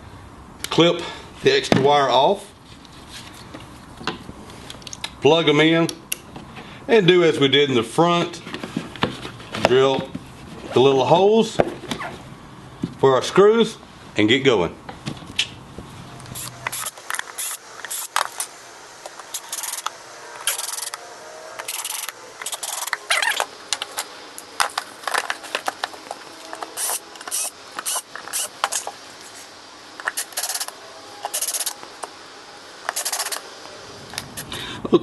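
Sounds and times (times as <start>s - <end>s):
tools and parts handled: 21.6s - 29.0s.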